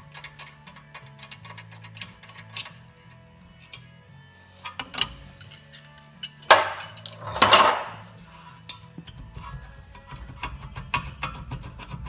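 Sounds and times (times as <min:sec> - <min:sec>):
metal tools clanking: 0:04.6 - 0:08.8.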